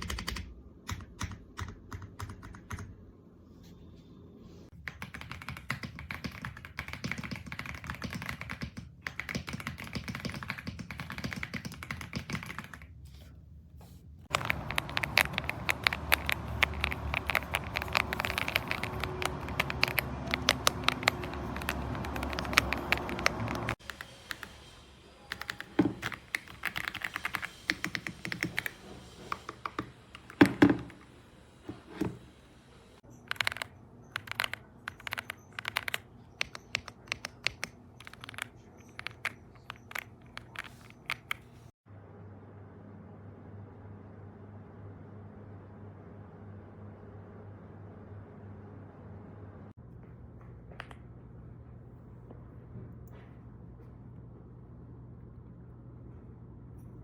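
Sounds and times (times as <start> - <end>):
mechanical keyboard typing: 0.0 - 2.9, 4.8 - 12.9, 14.3 - 24.4, 25.3 - 31.0, 33.2 - 41.4.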